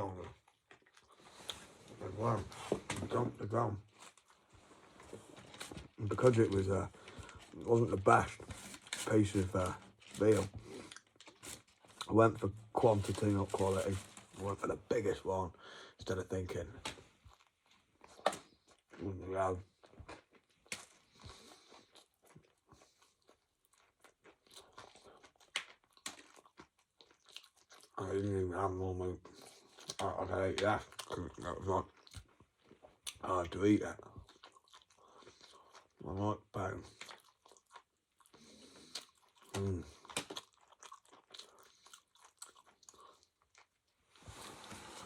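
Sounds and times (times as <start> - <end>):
person chewing food: 0.3 - 2.0, 9.9 - 12.1, 17.2 - 19.0, 19.6 - 28.0, 29.3 - 33.2, 34.0 - 36.0, 36.8 - 45.0.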